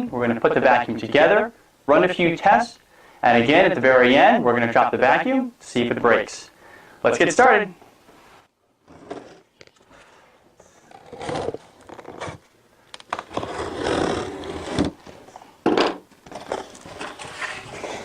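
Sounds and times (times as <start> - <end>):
packaging scraping and rustling: 10.8 - 15.4, 16.2 - 18.0.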